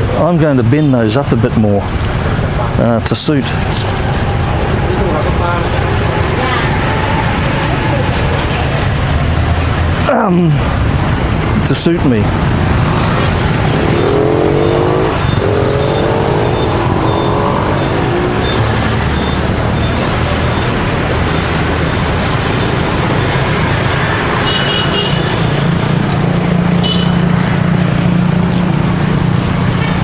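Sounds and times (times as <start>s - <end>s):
street traffic: 0.0s - 30.0s
engine speeding up: 12.2s - 24.4s
car horn toots: 24.4s - 25.5s, 26.8s - 27.2s.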